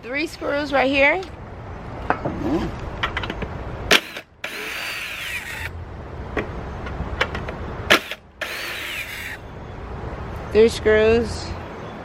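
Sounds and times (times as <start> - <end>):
cordless drill running: 4.0 - 5.7, 8.0 - 9.4.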